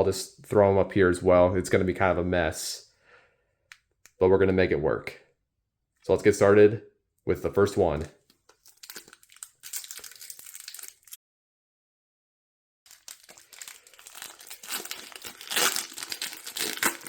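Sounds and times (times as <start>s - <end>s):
foil wrapper crinkling and tearing: 8.5s - 11.2s, 12.9s - 17.0s.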